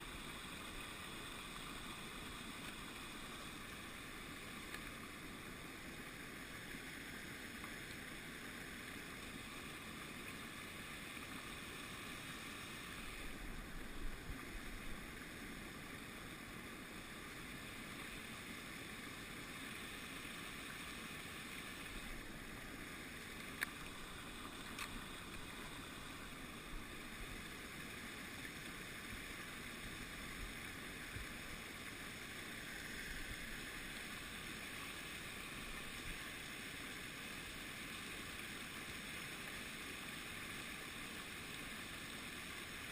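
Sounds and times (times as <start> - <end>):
flowing creek water: 0.0 - 42.9
faint clicks: 4.6 - 5.0, 23.4 - 25.9.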